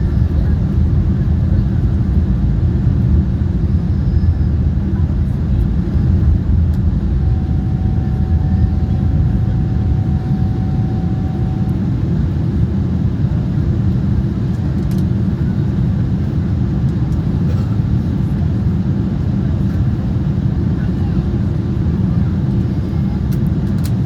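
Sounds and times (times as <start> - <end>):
faint steady whine: 0.0 - 14.6
airliner low rumble: 0.0 - 24.0.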